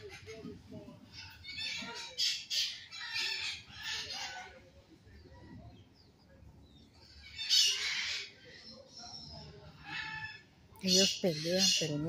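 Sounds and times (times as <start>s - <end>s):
birds squawking: 0.0s - 4.6s, 7.1s - 8.6s, 9.7s - 12.0s.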